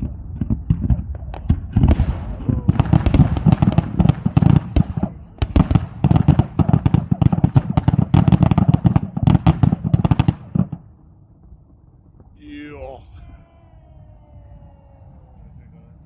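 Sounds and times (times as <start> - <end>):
fireworks bangs and crackles: 0.0 - 10.9.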